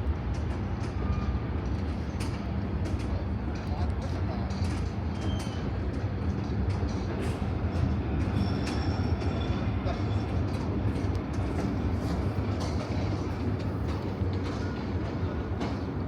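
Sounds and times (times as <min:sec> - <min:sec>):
train rumble passing: 0:00.0 - 0:16.0
wheel squeal: 0:05.2 - 0:05.7, 0:08.3 - 0:10.4.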